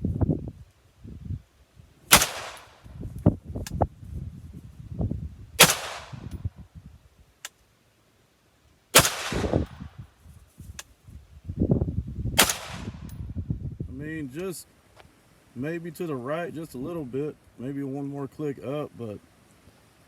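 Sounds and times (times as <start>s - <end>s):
rifle shots with echo: 2.1s - 2.8s, 5.6s - 6.2s, 9.0s - 9.8s, 12.4s - 13.0s.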